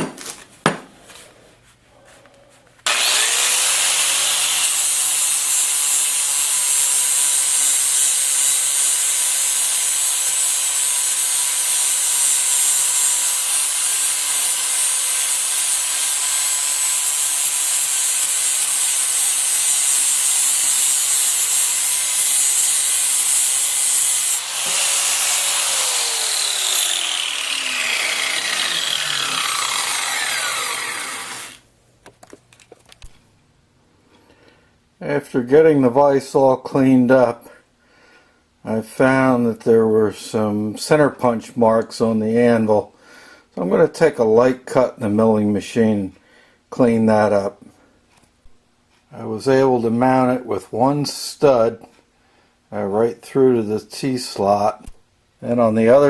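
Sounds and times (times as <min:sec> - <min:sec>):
power tool spinning down: 0:02.9 - 0:31.6
rotary power tool whining: 0:02.9 - 0:31.6.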